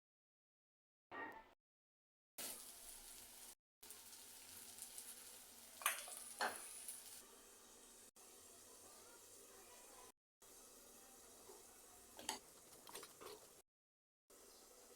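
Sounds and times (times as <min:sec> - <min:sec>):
food sizzling in hot oil: 0:02.4 - 0:13.6.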